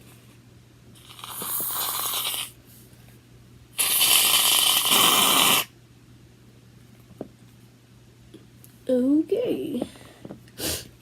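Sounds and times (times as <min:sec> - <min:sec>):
aerosol shaving cream hissing: 0:01.1 - 0:02.6, 0:03.8 - 0:05.7.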